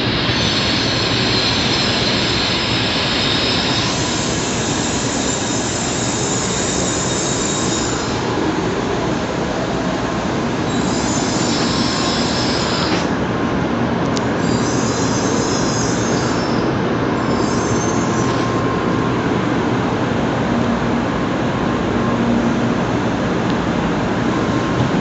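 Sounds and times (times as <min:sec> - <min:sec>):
high hiss: 0:00.0 - 0:13.2
train rumble and rushing: 0:00.0 - 0:25.0.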